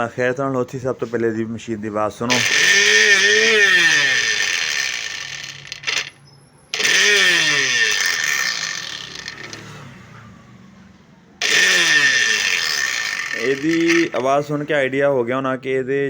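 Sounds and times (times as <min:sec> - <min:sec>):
mixer grinder motor winding down: 0:02.3 - 0:06.1, 0:06.8 - 0:10.0, 0:11.4 - 0:14.4.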